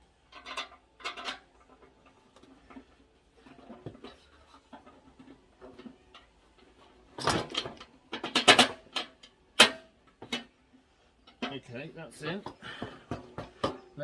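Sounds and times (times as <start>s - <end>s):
sheet metal clanks and knocks: 7.2s - 10.5s.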